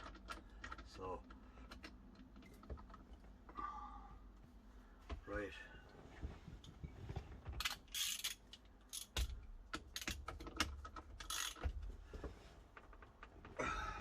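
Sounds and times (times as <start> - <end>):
ratchet wrench clicking: 7.6 - 10.2, 11.2 - 11.7.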